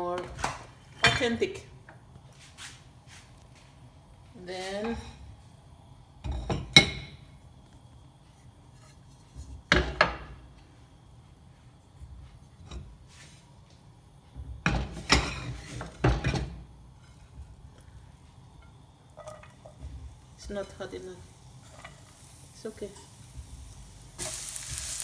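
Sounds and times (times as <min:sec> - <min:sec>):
cookware and utensils clattering: 0:00.2 - 0:01.6, 0:06.3 - 0:07.3, 0:14.7 - 0:23.3.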